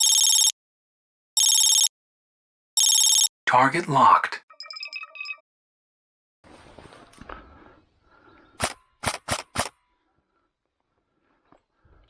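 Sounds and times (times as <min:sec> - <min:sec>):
airsoft gun shots: 0:08.6 - 0:09.7.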